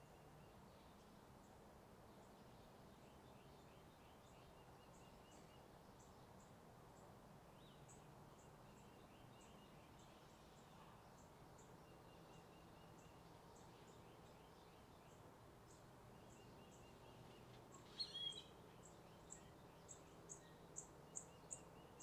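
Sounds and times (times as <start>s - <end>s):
birds chirping: 15.7s - 22.0s.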